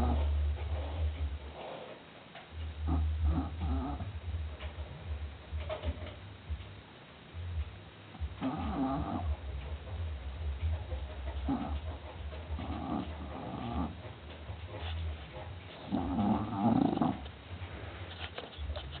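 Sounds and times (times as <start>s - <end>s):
dog snoring: 0.0s - 1.1s, 2.8s - 4.2s, 8.2s - 9.6s, 11.3s - 14.1s, 14.7s - 17.4s
steady low hum: 0.0s - 19.0s.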